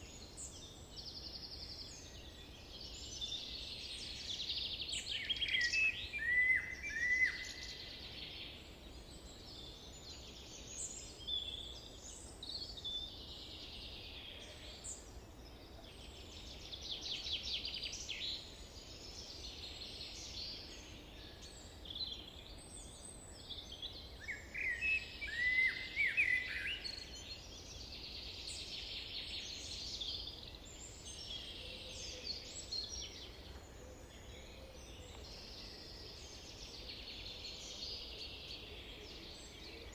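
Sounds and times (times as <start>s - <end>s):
songbirds chirping and trilling: 0.0s - 39.9s
loud nearby bird: 16.2s - 39.9s.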